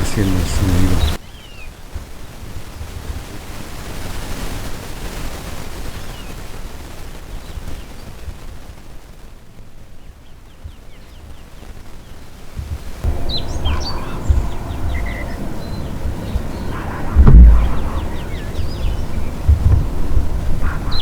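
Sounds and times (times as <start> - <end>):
wind buffeting microphone: 0.0 - 1.2, 12.2 - 21.0
faint high chirps: 13.0 - 21.0.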